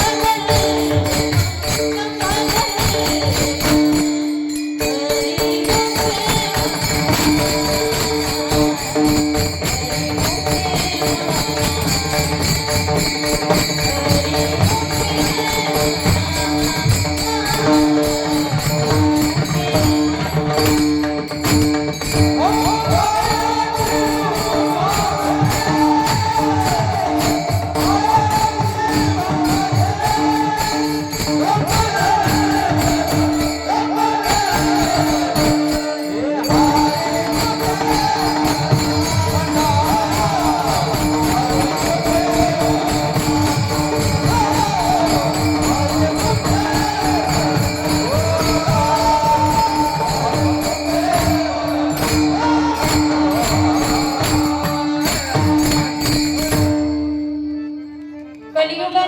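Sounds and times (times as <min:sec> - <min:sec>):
jingling percussion: 0:00.0 - 0:58.6.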